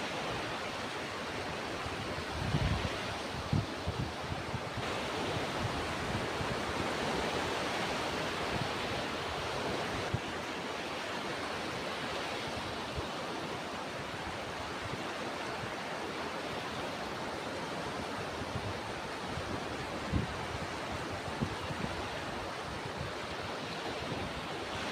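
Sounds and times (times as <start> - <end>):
ocean surf washing: 0.0 - 24.9.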